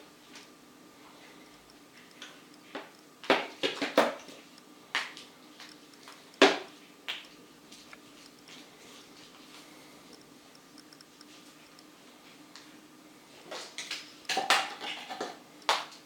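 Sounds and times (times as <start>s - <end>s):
faint steady hum: 0.0s - 16.0s
small hard objects knocking: 13.6s - 16.0s.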